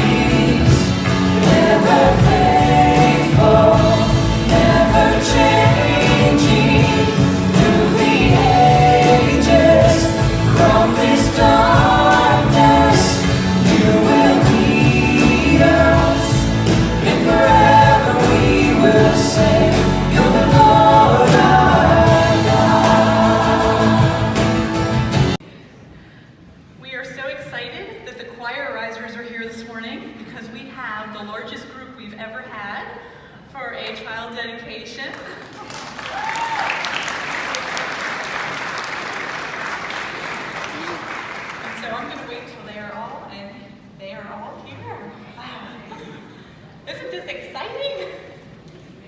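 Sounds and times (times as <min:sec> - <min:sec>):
instrumental backing: 0:00.0 - 0:25.4
voices singing a hymn: 0:00.0 - 0:25.4.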